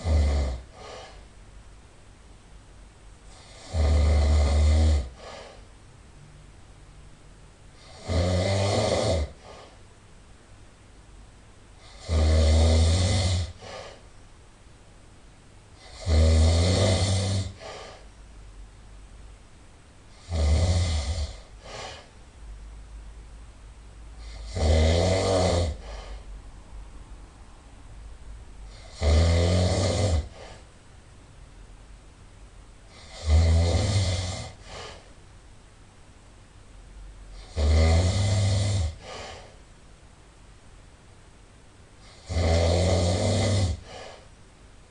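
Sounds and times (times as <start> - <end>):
person snoring loudly: 0.0 - 1.2, 3.3 - 5.6, 7.8 - 9.7, 11.8 - 14.0, 15.8 - 18.0, 20.1 - 22.1, 24.2 - 26.2, 28.7 - 30.6, 32.9 - 35.0, 37.3 - 39.5, 42.0 - 44.2
soft breath: 0.6 - 1.4, 5.1 - 5.7, 9.4 - 9.9, 13.4 - 14.2, 17.5 - 18.2, 21.1 - 22.2, 25.7 - 26.4, 30.2 - 30.8, 34.4 - 35.2, 38.8 - 39.7, 43.7 - 44.4.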